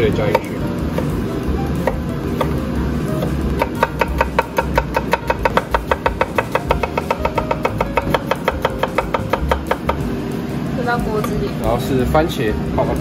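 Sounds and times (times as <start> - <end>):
background music: 0.0 - 13.0
knife chopping on cutting board: 1.8 - 2.6, 3.2 - 10.0.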